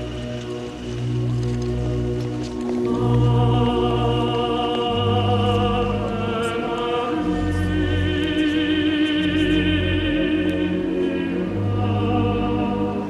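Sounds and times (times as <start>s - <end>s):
held low notes: 0.0s - 13.0s
operatic singing with vibrato: 2.9s - 13.0s.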